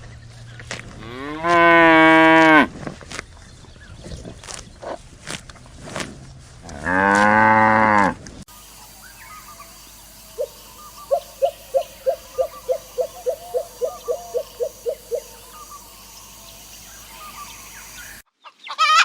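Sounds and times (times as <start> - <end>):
cow mooing: 1.0 - 2.7, 6.7 - 8.2.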